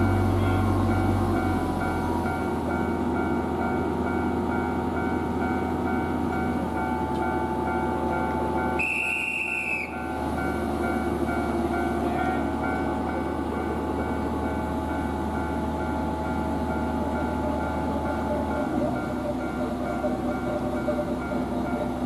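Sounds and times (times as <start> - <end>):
train rumbling past: 0.0 - 22.0
level-crossing bell dinging: 9.9 - 22.0.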